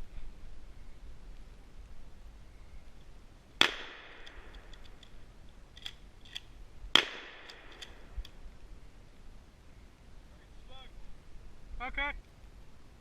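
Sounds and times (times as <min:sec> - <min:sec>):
shotgun shots: 0:03.6 - 0:04.5, 0:06.9 - 0:08.0
sharp clicks: 0:04.2 - 0:08.4.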